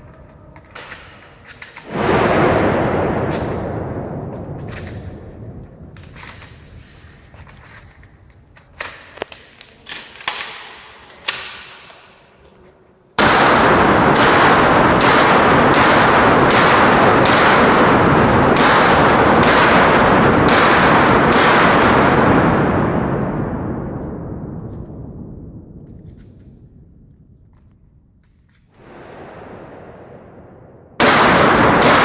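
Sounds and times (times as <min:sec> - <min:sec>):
shotgun shots with echo: 0:01.8 - 0:07.8, 0:13.2 - 0:27.0, 0:28.8 - 0:32.0.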